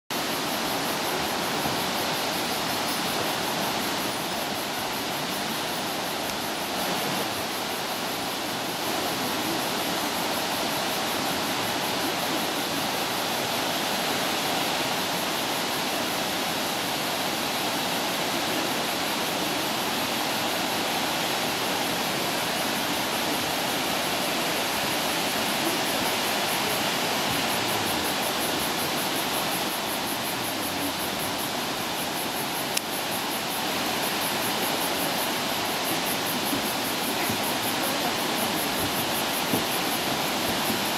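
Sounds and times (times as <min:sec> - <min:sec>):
waterfall roaring: 0:00.1 - 0:40.9.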